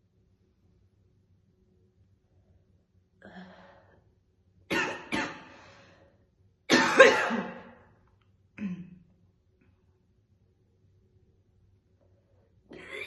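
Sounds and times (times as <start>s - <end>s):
woman coughing: 4.7s - 5.5s, 6.7s - 7.7s.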